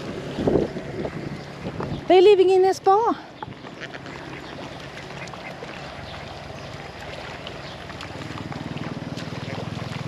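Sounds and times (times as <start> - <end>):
small engine droning: 0.0 - 10.0.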